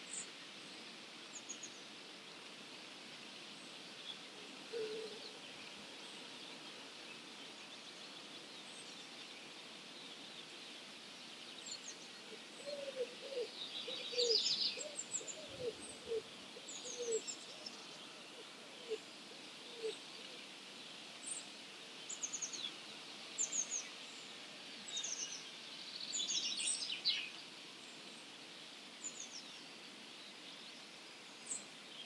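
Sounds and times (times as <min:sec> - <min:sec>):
distant songbirds singing: 0:11.4 - 0:20.3.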